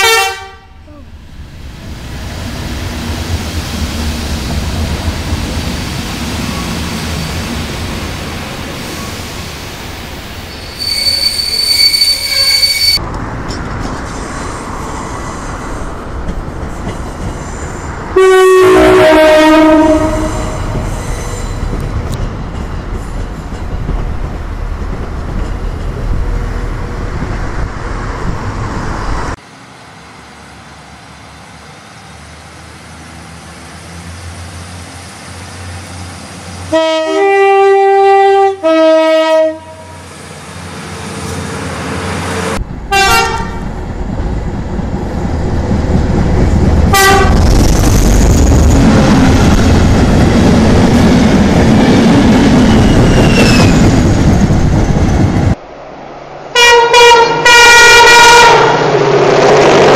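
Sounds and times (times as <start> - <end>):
two-tone train horn: 0.0 - 0.8, 18.2 - 20.8, 36.7 - 40.1, 42.9 - 43.6, 46.9 - 47.4, 56.6 - 58.8
train rumble: 0.0 - 59.9
shrill high-pitched tone: 10.6 - 13.0.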